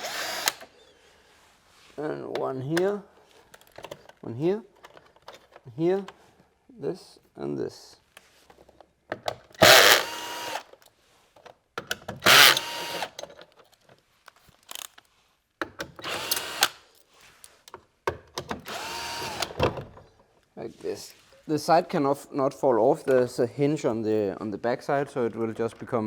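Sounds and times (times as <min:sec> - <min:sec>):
power drill-driver running: 0:00.0 - 0:00.7, 0:09.6 - 0:10.8, 0:12.2 - 0:13.2, 0:16.0 - 0:16.8, 0:18.6 - 0:19.6.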